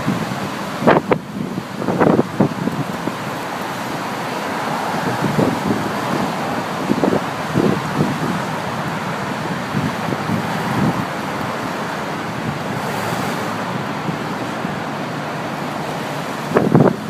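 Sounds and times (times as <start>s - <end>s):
storm waves breaking: 0.0s - 17.0s
wind on microphone: 0.0s - 17.0s.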